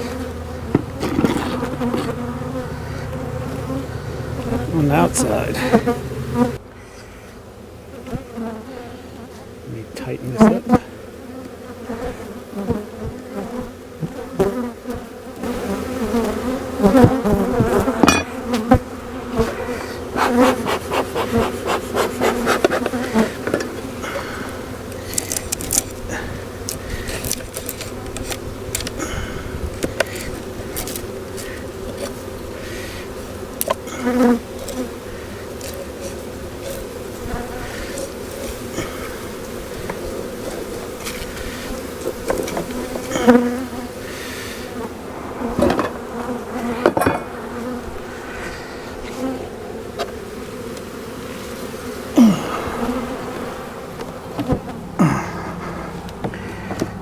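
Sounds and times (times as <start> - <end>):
honeybees buzzing: 0.0 - 57.0
wooden frames knocking and scraping: 0.5 - 2.2, 22.3 - 23.9, 56.0 - 57.0.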